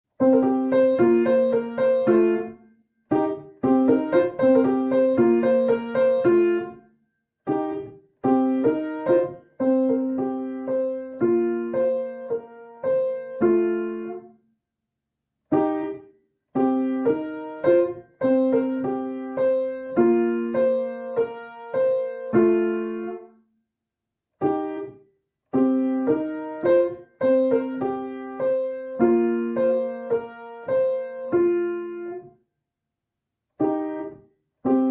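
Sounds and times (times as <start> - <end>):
piano playing chords: 0.2 - 6.8, 7.5 - 14.2, 16.6 - 23.2, 25.6 - 32.2.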